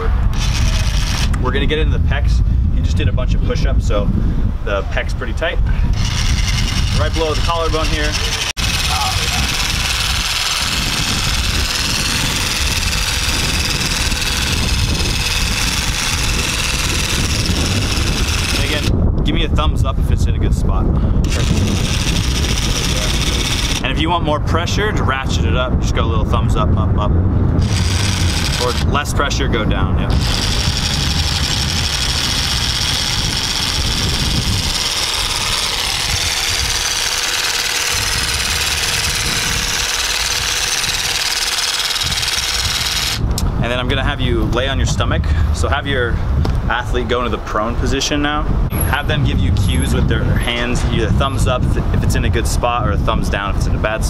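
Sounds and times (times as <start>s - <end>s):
massage gun motor buzz: 0.3s - 1.4s, 5.9s - 18.9s, 21.2s - 23.9s, 27.6s - 28.9s, 30.1s - 43.2s.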